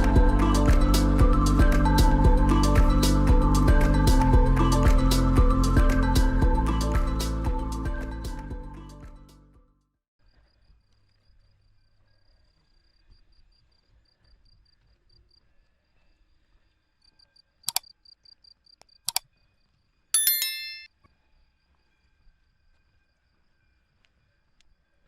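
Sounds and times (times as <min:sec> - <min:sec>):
faint high insect chirp: 0:10.2 - 0:20.1, 0:20.9 - 0:25.0
bell-like metallic ring: 0:20.2 - 0:20.9.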